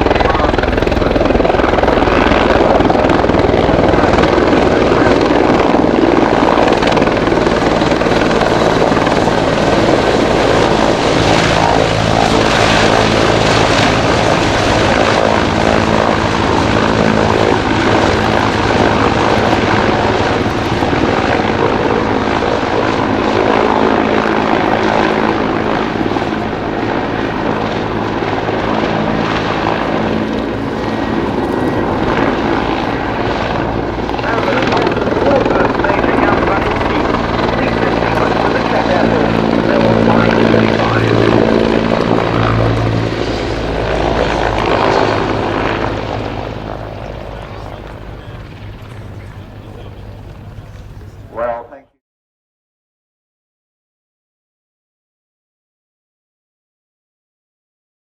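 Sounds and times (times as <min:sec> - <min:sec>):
helicopter rotor and engines: 0:00.0 - 0:51.9.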